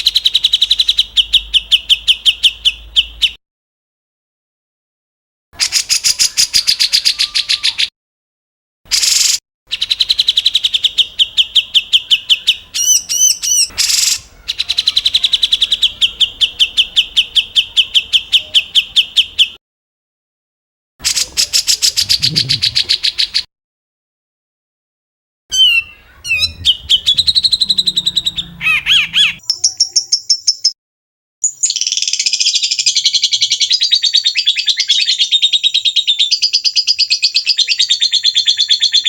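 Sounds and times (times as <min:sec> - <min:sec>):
whistled bird notes: 0:05.6 - 0:07.9, 0:08.9 - 0:19.6, 0:25.5 - 0:30.8
songbird harsh trills: 0:08.9 - 0:19.6, 0:25.5 - 0:30.7.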